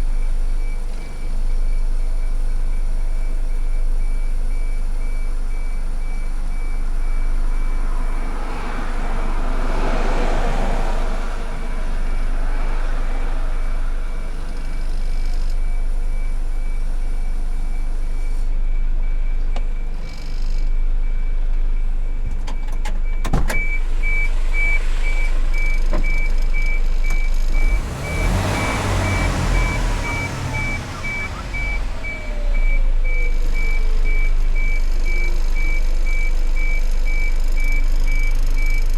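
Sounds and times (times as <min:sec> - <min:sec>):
truck engine running: 0:00.0 - 0:38.9
rapid high beeping: 0:23.1 - 0:38.9.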